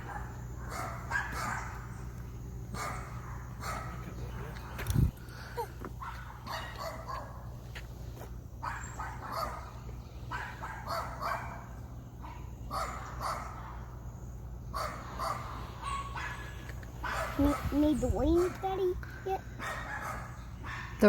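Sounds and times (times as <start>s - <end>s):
dog barking: 0.0s - 1.8s, 2.7s - 4.2s, 6.0s - 7.4s, 8.6s - 13.9s, 14.7s - 18.8s, 19.6s - 21.0s.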